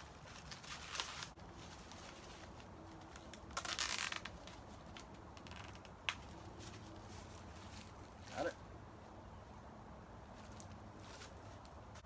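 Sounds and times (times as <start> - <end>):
zip tie ratcheting: 3.5 - 4.4, 5.4 - 6.0.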